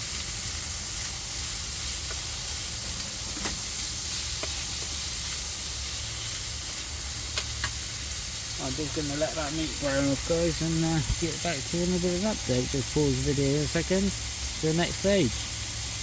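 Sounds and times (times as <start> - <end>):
meat and onion sizzling in pan: 0.0 - 16.0.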